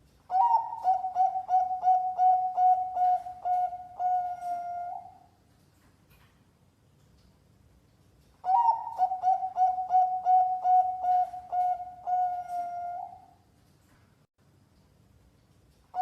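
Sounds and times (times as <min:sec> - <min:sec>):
dove cooing: 0:00.3 - 0:05.3, 0:08.4 - 0:13.4.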